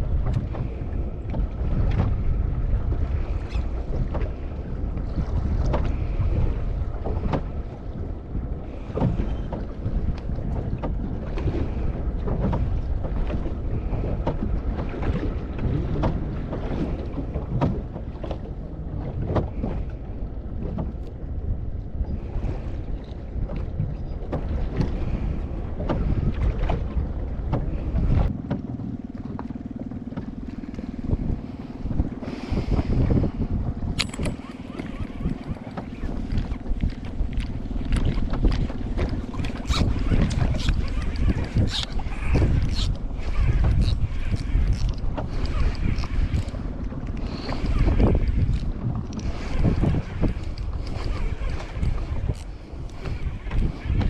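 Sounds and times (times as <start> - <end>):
steady low hum: 0.0 - 54.0
wind buffeting microphone: 0.0 - 54.0
knocks and slaps from hull: 12.2 - 19.8, 20.6 - 21.1, 23.4 - 25.0, 25.8 - 30.9.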